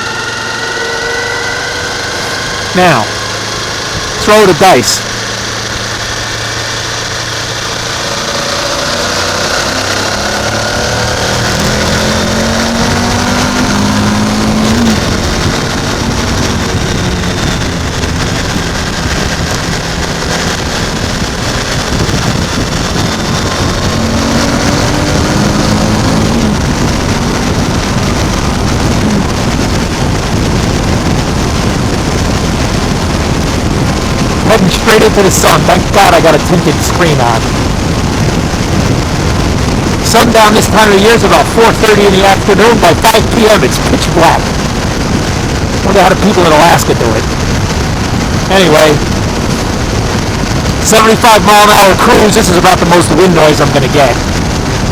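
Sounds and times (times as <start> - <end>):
motorcycle engine accelerating: 0.0 - 54.9
wind rush on microphone: 0.0 - 54.9.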